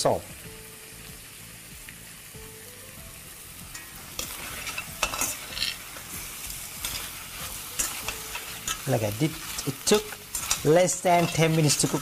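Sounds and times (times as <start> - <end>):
prawns sizzling in a pan: 0.0 - 12.0
utensil scraping and knocking pan: 4.2 - 6.2, 6.8 - 12.0.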